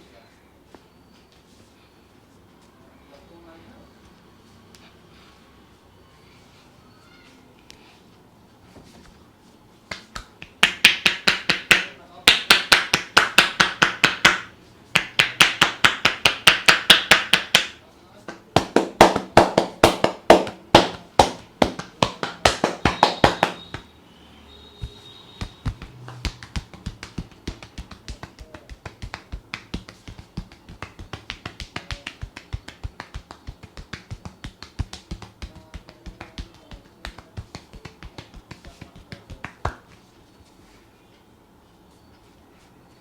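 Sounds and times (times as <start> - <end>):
hands tapping on head: 9.9 - 23.9, 24.8 - 40.1.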